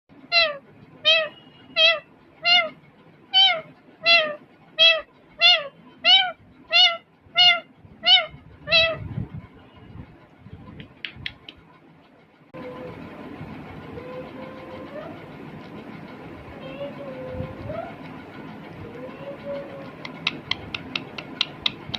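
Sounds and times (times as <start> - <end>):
parrot mewing calls: 0.3 - 9.0.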